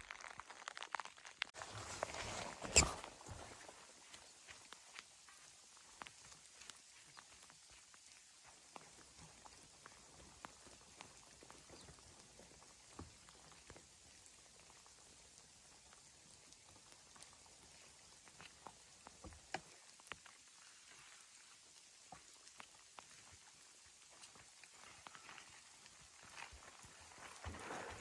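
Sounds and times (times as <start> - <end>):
faint ticks and taps: 4.1 - 20.6, 21.5 - 27.0.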